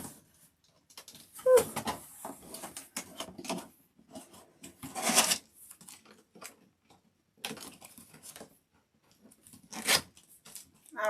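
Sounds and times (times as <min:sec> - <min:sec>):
packaging clicking and rustling: 0:05.1 - 0:08.5.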